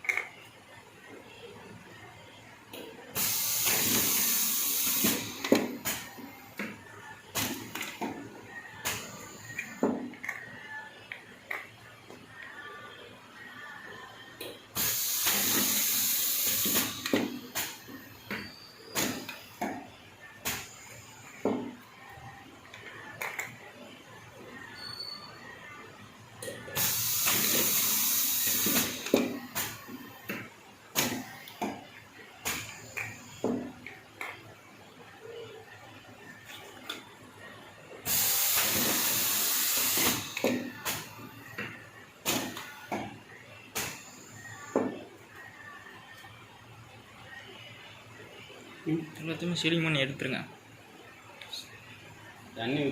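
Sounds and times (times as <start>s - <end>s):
machine rushing hiss: 3.2s - 6.0s, 14.8s - 17.8s, 26.8s - 29.8s, 38.0s - 40.6s.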